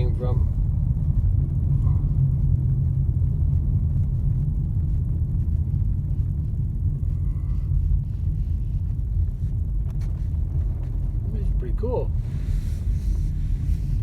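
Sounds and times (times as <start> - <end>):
engine and road noise rumble: 0.0 - 14.0.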